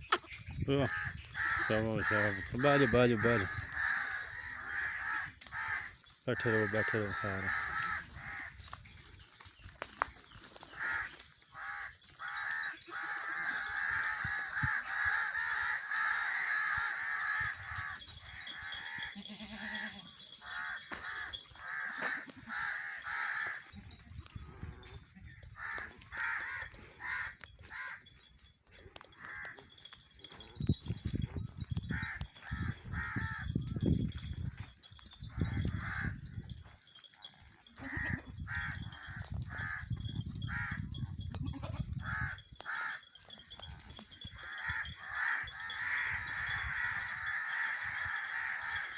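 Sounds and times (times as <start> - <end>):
crows cawing: 0.8 - 8.6, 10.7 - 23.8, 25.5 - 28.1, 29.1 - 29.8, 31.9 - 33.6, 35.4 - 36.3, 37.8 - 40.8, 42.0 - 43.1, 44.4 - 48.9
goats bleating: 18.7 - 24.2, 37.7 - 38.4.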